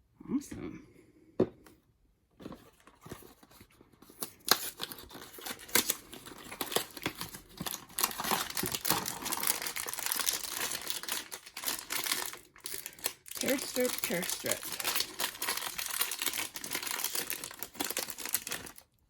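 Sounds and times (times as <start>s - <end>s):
cardboard and foil crinkling and tearing: 2.7s - 19.0s.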